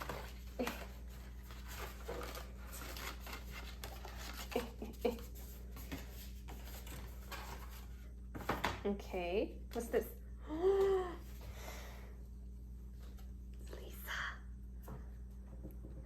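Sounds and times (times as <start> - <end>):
paper and plastic rustling: 0.0 - 8.7.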